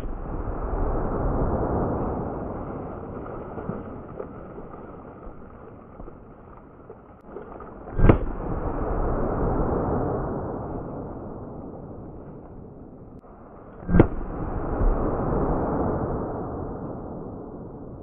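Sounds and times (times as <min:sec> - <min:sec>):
revolver gunshot: 0:07.9 - 0:08.7, 0:13.8 - 0:14.6.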